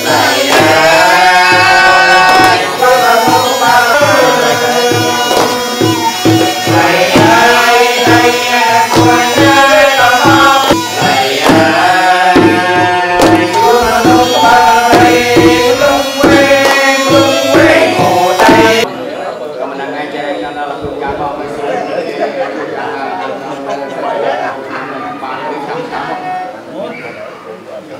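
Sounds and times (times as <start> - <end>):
melody over hand drum: 4.0 - 18.8.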